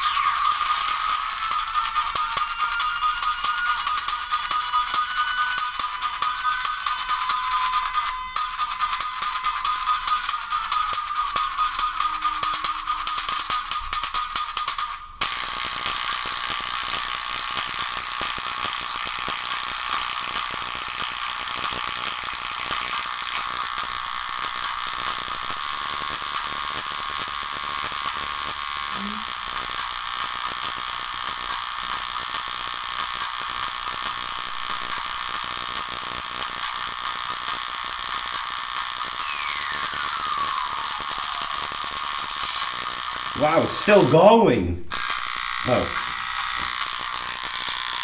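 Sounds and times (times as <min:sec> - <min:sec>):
overdriven loudspeaker buzzing: 0:43.4 - 0:46.2.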